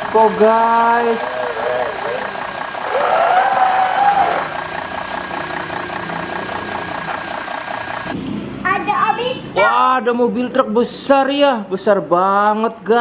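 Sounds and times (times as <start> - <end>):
toy engine sound effect: 0.0 - 8.2.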